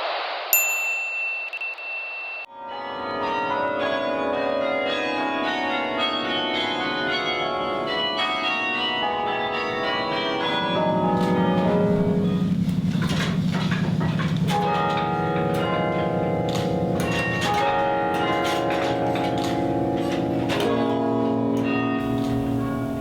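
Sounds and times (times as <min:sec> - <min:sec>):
deep low bell tone: 0:00.6 - 0:03.6, 0:09.1 - 0:23.0
carillon bells ringing: 0:00.6 - 0:23.0.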